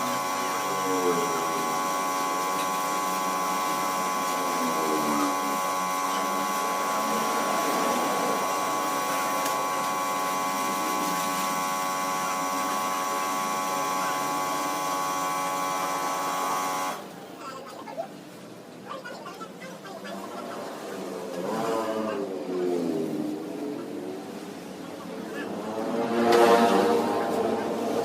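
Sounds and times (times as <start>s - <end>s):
power tool motor whining: 0.0s - 17.0s.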